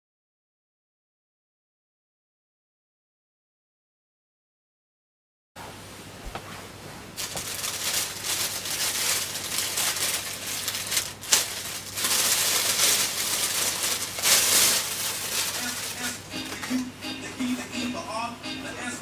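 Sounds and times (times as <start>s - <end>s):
steady low hum: 5.6s - 19.0s
packaging rustling and crinkling: 7.2s - 16.7s.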